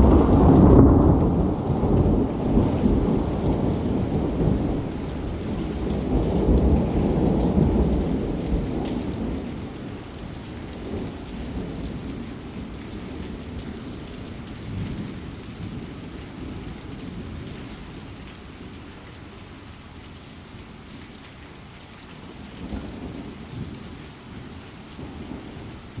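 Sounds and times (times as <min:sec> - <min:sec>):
thunder rumbling: 0:00.0 - 0:09.8
steady rain: 0:00.0 - 0:26.0.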